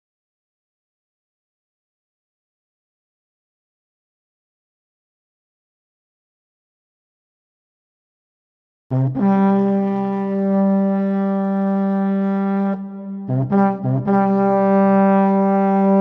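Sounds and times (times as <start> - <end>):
low brass-like horn: 8.9 - 16.0.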